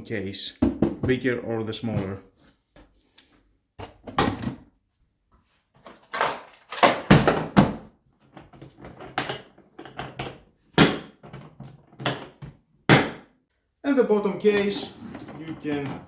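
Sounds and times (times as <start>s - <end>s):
plastic toolbox knocks and clatters: 0.6s - 2.2s, 5.8s - 13.3s.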